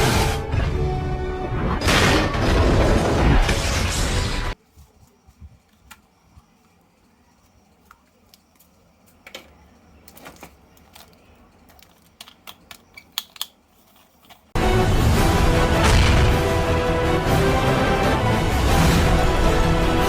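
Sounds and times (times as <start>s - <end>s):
loud music: 14.6s - 20.0s.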